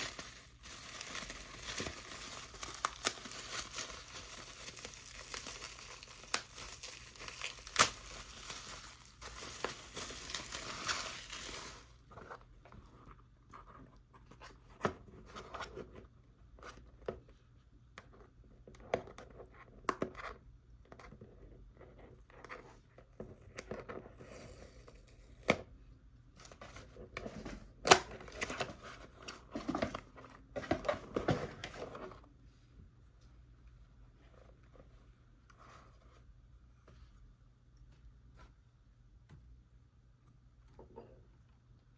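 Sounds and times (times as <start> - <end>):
wrapping crinkling and tearing: 0.0 - 12.0.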